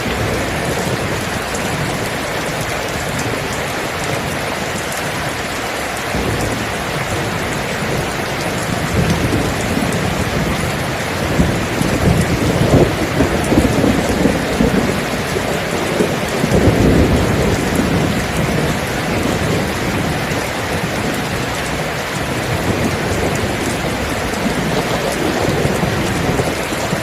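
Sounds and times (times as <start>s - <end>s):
steady rain falling: 0.0s - 27.0s
rolling thunder: 6.1s - 27.0s.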